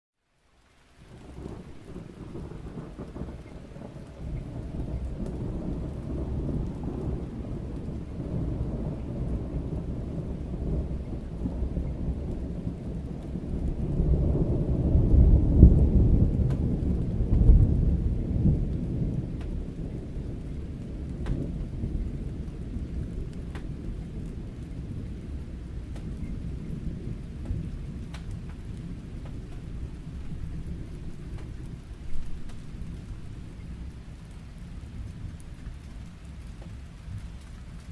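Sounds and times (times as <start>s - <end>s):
rolling thunder: 1.0s - 37.9s.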